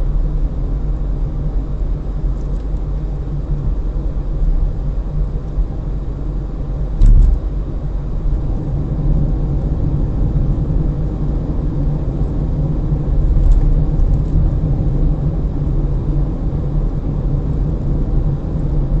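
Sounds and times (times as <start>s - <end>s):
air conditioning: 0.0s - 19.0s
car engine: 0.0s - 19.0s
tyre road noise: 0.0s - 19.0s
wind noise: 7.0s - 7.6s.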